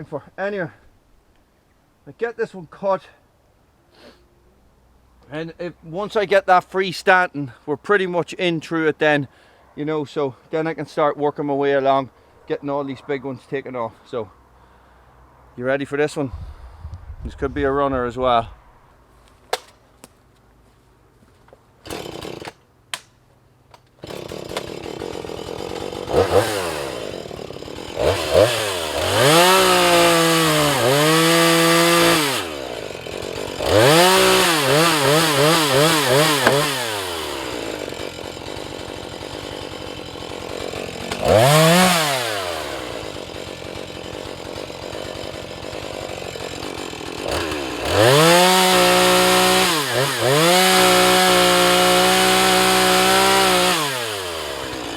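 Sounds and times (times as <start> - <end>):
chainsaw revving and cutting: 21.8 - 22.6, 24.0 - 54.9.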